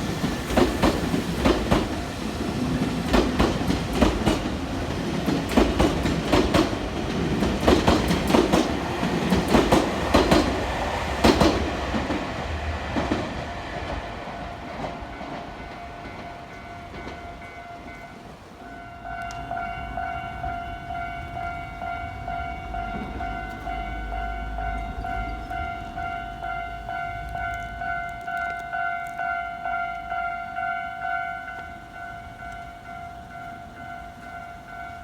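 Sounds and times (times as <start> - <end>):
train wheels clacking over rail joints: 0.0 - 17.4.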